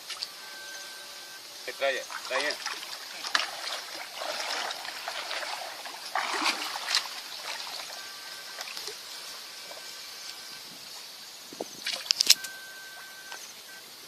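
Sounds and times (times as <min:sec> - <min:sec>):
water splashing and sloshing: 0:00.0 - 0:00.4, 0:01.8 - 0:10.0, 0:11.6 - 0:13.1
water trickling: 0:01.6 - 0:10.1.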